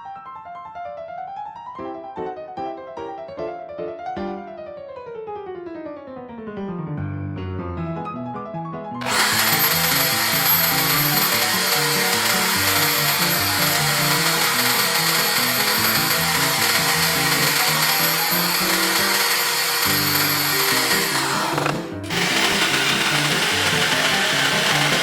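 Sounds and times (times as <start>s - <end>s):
piano background music: 0.0s - 25.0s
electric power tool whining: 9.0s - 25.0s.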